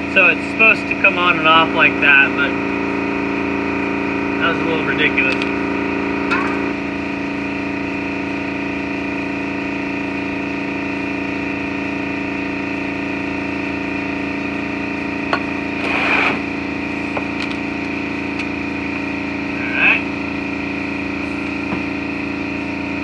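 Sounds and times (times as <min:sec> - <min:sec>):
steady machine hum: 0:00.0 - 0:23.0
short rattling scrape: 0:15.8 - 0:16.4.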